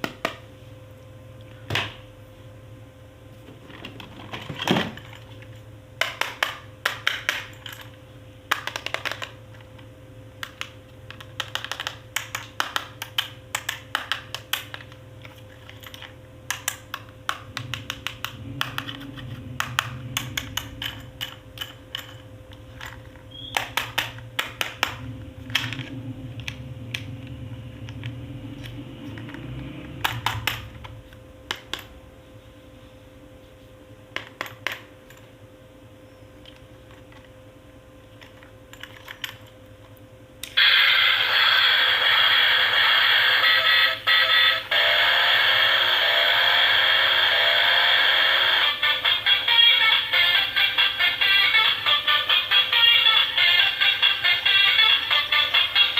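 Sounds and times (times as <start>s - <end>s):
faint steady hum: 0.0s - 55.9s
plastic pieces clicking: 8.5s - 9.4s, 10.4s - 15.0s.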